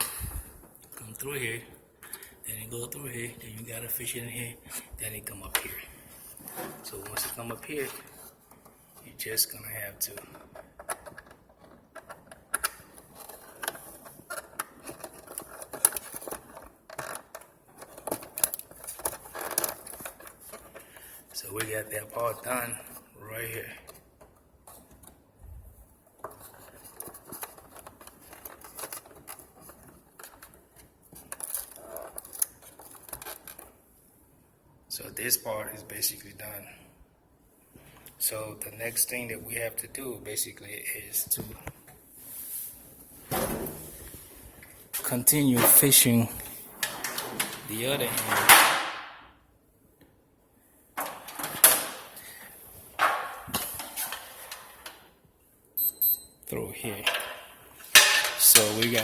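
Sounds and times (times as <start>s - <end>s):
cable clicking and rustling: 5.2s - 9.1s, 9.9s - 23.1s, 23.7s - 34.1s, 51.0s - 55.2s.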